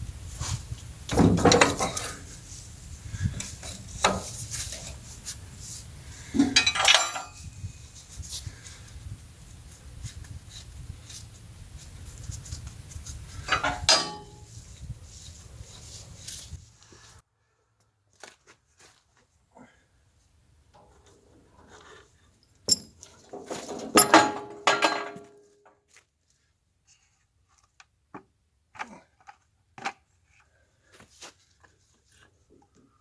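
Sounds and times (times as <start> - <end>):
steel parts clanking: 1.1 - 2.4, 6.4 - 7.5, 13.4 - 14.5, 22.6 - 25.4.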